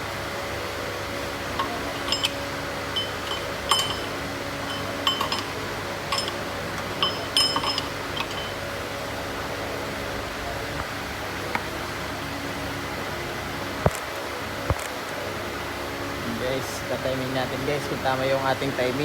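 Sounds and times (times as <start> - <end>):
steady background hum: 0.0 - 19.0
metallic clinks of tools: 1.6 - 8.7.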